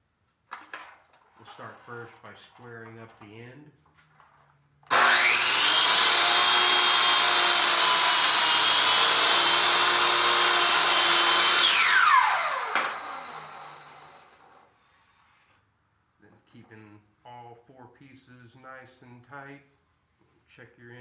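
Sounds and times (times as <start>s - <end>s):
electric miter saw running: 4.9s - 14.6s.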